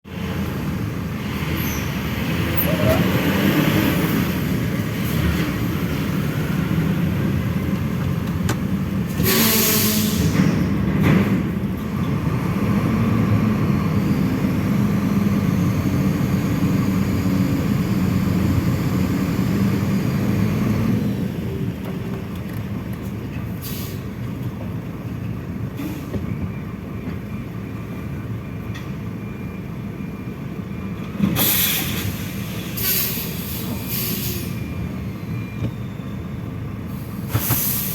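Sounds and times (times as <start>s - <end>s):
diesel truck engine labouring: 0.1s - 37.9s
air brake hisses: 9.2s - 10.6s, 23.6s - 24.1s, 31.4s - 34.6s, 36.9s - 37.9s.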